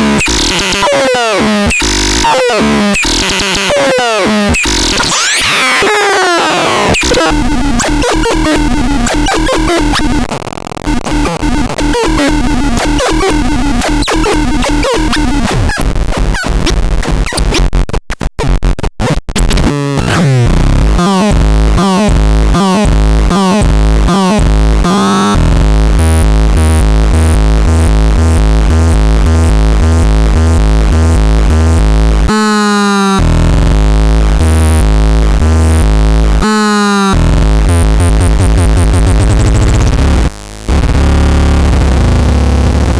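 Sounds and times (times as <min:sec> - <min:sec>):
high synth blips: 0:00.0 - 0:10.3, 0:11.2 - 0:15.6
synthesizer downward zaps: 0:00.0 - 0:10.3, 0:11.0 - 0:15.8, 0:20.0 - 0:27.3
harsh noisy synthesizer tones: 0:00.0 - 0:17.6, 0:18.4 - 0:42.9
rising and falling synth sweeps: 0:05.0 - 0:09.9
pulsing low synth bass: 0:07.0 - 0:10.3, 0:11.1 - 0:15.7, 0:20.4 - 0:32.6, 0:33.2 - 0:42.9.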